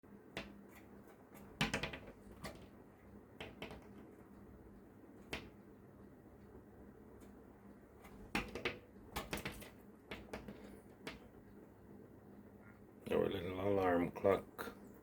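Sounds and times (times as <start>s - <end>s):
bird tapping on window: 1.5s - 2.7s, 3.4s - 4.0s.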